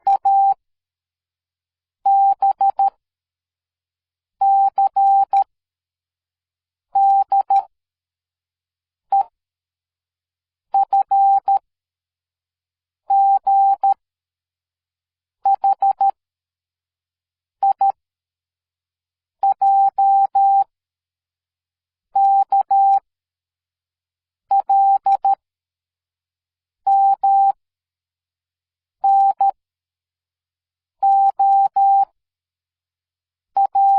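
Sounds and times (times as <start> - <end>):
morse code beeps: 33.6 - 33.9.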